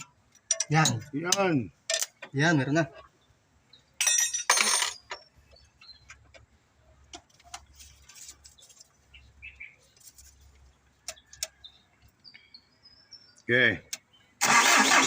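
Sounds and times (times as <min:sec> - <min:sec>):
faint bird chirps: 0:07.9 - 0:14.4.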